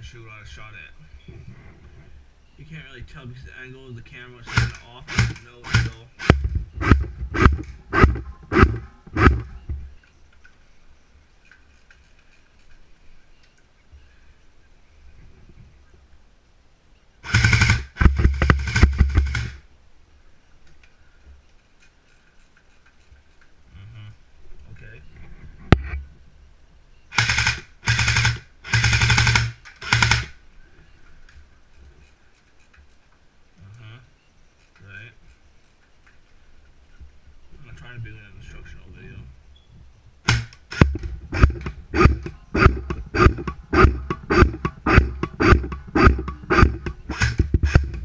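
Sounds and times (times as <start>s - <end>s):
airsoft rifle shots: 4.5s - 9.5s, 17.2s - 19.6s, 27.1s - 30.4s, 40.2s - 48.0s
faint ticks: 11.3s - 14.1s.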